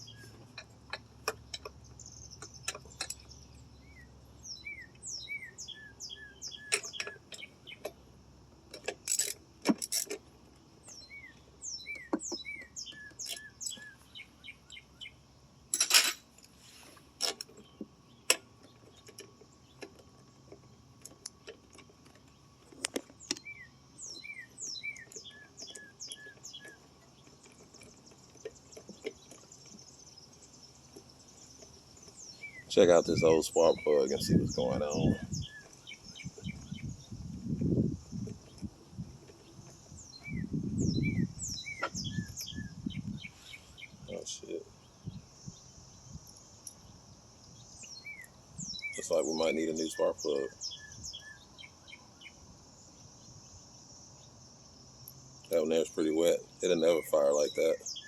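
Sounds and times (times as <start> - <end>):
sharp clicks and knocks: 0.3 - 1.8, 2.4 - 3.4, 11.9 - 13.9, 17.2 - 23.5
songbird whistling: 3.8 - 7.9, 10.9 - 15.1, 32.2 - 37.1, 40.0 - 44.2, 47.7 - 52.4.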